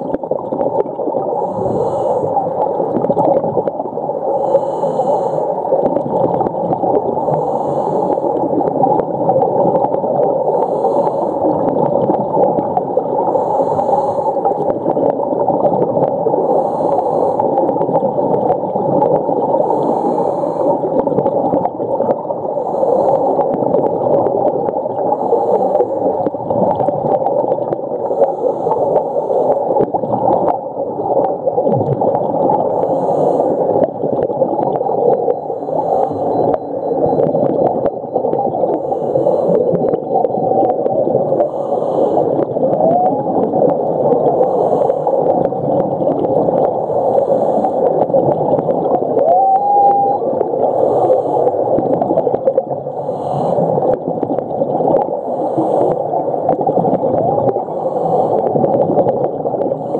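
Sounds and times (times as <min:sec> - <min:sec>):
underwater crackle: 0:00.0 - 0:59.9
whale song: 0:34.4 - 0:43.7, 0:48.9 - 0:51.3.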